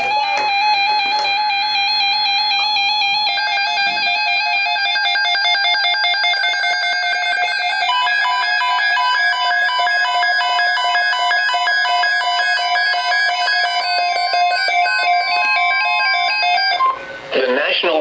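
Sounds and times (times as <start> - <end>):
pulsing electronic alert tone: 0.0 - 17.1
higher electronic tone: 0.0 - 17.4.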